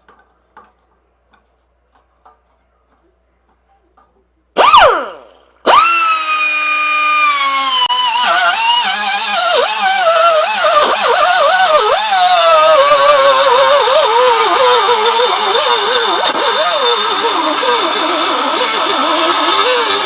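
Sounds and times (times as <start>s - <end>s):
cutoff wheel motor whining: 4.6s - 20.0s.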